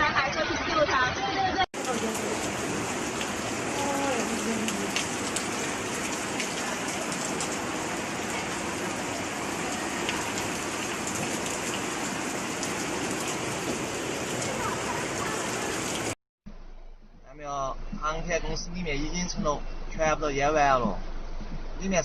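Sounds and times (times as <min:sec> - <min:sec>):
rushing water: 0:00.0 - 0:16.2.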